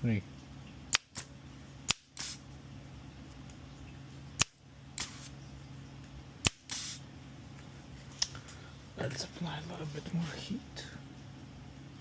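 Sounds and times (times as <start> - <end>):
steady low hum: 0.0 - 12.0
sharp snapping clicks: 0.9 - 1.3, 1.9 - 2.4, 4.4 - 5.2
short hiss: 2.2 - 2.4, 5.0 - 5.3, 6.7 - 7.0.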